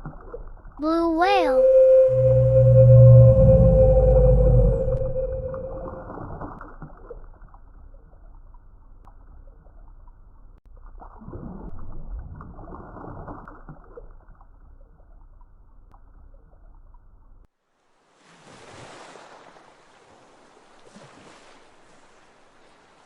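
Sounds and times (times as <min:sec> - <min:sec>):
muffled underwater rushing: 0:00.8 - 0:06.5.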